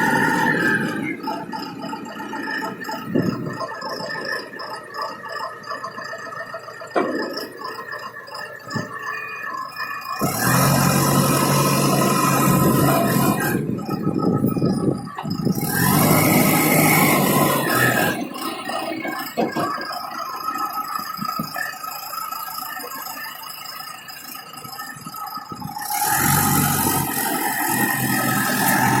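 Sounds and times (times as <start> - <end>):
truck engine running: 0.0 - 29.0.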